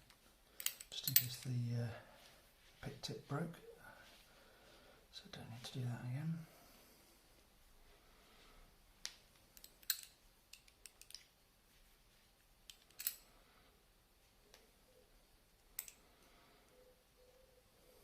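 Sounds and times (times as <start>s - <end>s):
metallic clicks from padlock handling: 0.6s - 1.5s, 9.6s - 11.3s, 12.7s - 13.2s, 15.8s - 16.0s.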